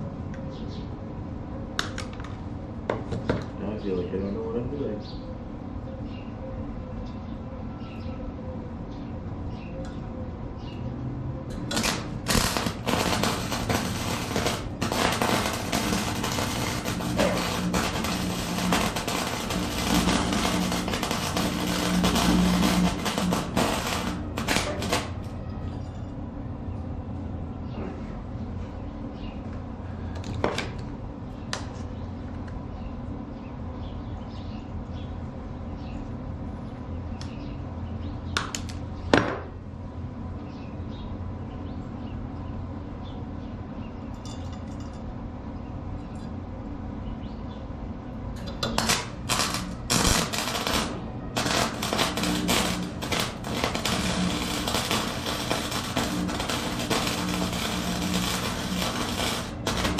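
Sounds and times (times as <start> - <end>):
steady low hum: 0.0 - 59.9
crackling and clatter: 11.5 - 25.4, 48.4 - 59.9.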